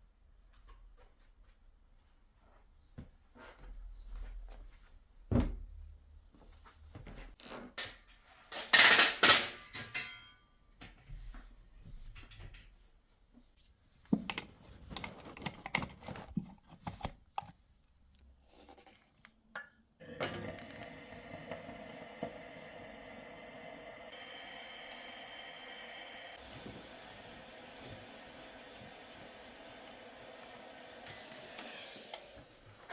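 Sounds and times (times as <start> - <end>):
dishes and utensils clattering: 8.5 - 10.4.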